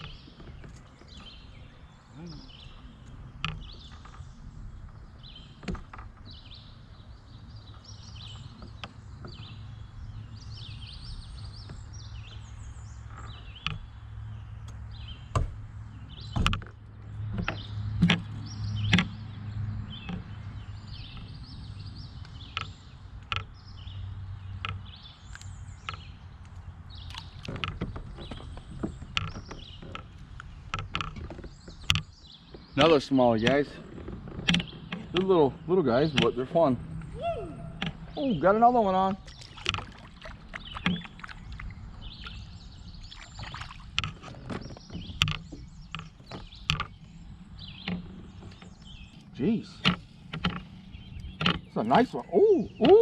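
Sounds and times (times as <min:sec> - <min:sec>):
birds chirping: 0:00.0 - 0:53.0
fishing gear knocking and clicking: 0:24.6 - 0:35.4.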